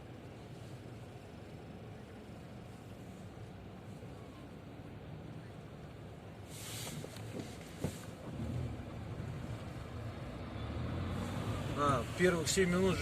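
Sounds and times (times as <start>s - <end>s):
car engine rumbling: 0.0s - 13.0s
short hiss: 6.4s - 8.2s.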